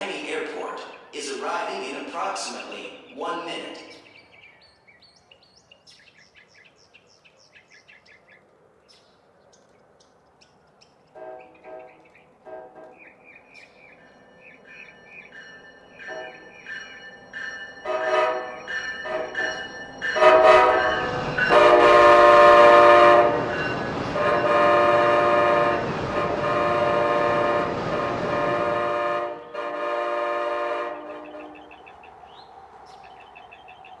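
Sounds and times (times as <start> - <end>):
bird chirping: 0.1 - 21.5, 31.0 - 34.0
train horn blasts: 11.1 - 13.1, 16.0 - 16.5, 17.8 - 31.7.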